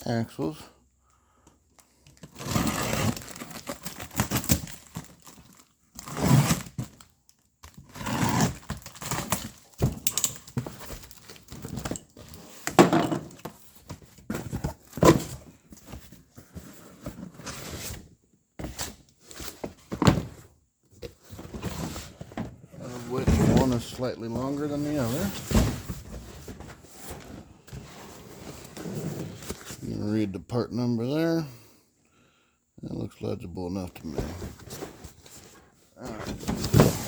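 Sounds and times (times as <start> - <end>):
box thunks and knocks: 12.6 - 16.1, 19.6 - 20.5, 25.4 - 27.4, 36.1 - 37.0.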